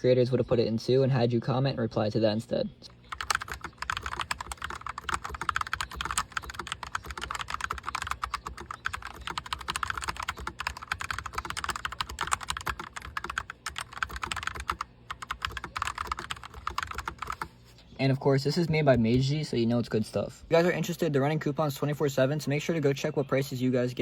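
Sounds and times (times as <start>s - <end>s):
mechanical keyboard typing: 3.1s - 17.5s.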